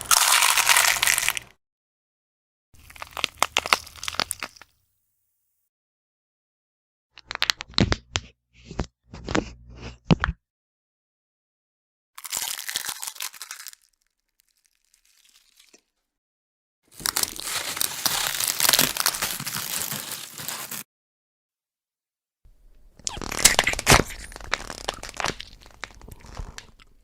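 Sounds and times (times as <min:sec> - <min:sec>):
crackling tearing crunch: 0:00.0 - 0:01.5, 0:02.8 - 0:04.7, 0:12.2 - 0:15.8, 0:16.9 - 0:20.8, 0:23.0 - 0:27.0
sharp bone cracks: 0:23.0 - 0:26.8.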